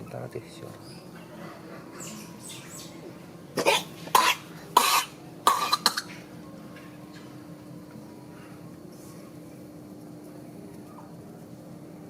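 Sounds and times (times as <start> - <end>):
animal coughing: 3.6 - 6.2.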